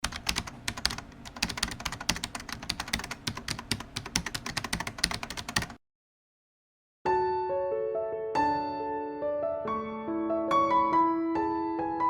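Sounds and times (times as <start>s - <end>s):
keyboard typing: 0.0s - 5.8s.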